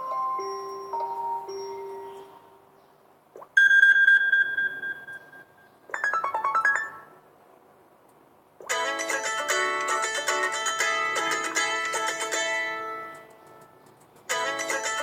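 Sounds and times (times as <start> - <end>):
busy phone ringtone: 3.6 - 7.2
phone alert tones: 3.6 - 7.2.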